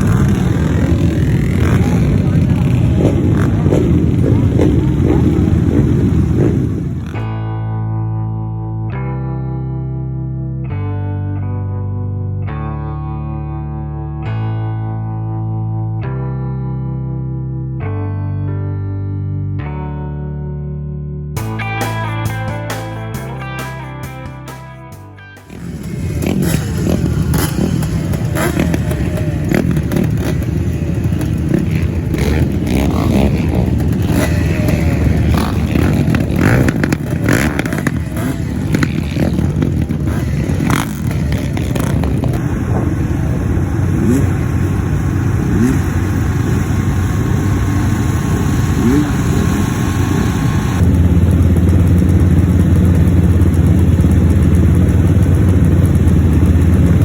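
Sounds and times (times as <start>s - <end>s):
racing engines revving: 0.0s - 7.3s, 25.4s - 57.0s.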